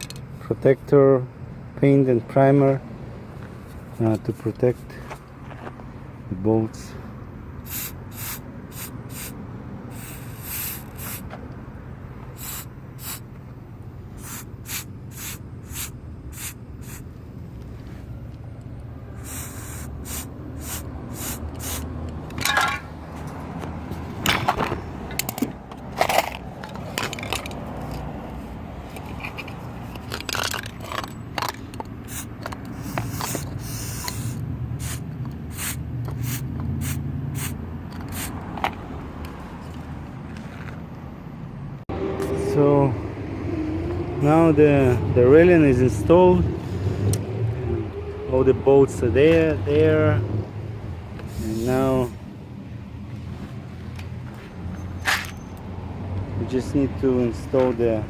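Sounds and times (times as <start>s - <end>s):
aerosol spray can hissing: 7.7s - 11.3s, 12.4s - 13.2s, 14.2s - 17.1s, 19.2s - 21.9s, 32.1s - 38.3s
metallic clinks and scrapes: 28.8s - 34.4s, 54.7s - 55.6s.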